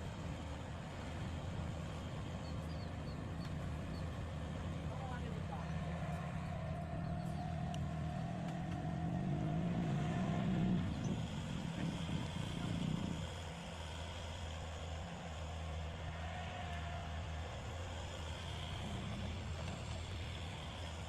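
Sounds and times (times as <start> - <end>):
excavator engine running: 0.0 - 21.0.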